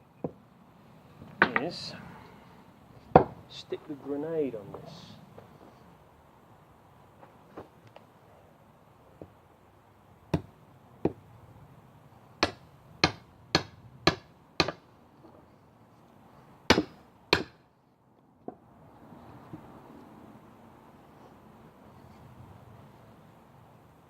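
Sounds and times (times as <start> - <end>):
sledgehammer striking steel wedge: 16.7 - 17.6.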